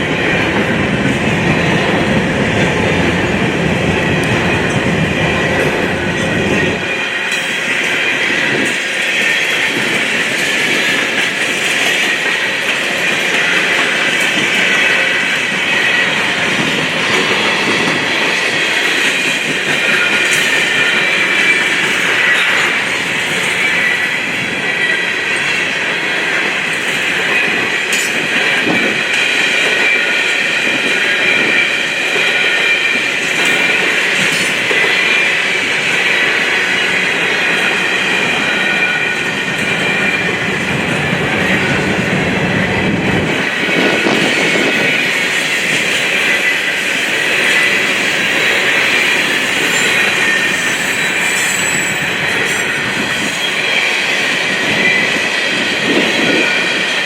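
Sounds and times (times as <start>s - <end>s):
train wheels rolling on rails: 0.0s - 57.0s
high thin wheel squeal: 47.4s - 54.1s.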